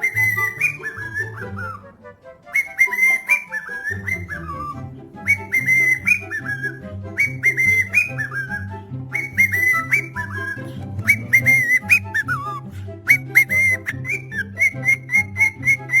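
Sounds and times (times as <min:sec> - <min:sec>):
whistled tune: 0:00.0 - 0:16.0
plucked bass line: 0:04.2 - 0:16.0.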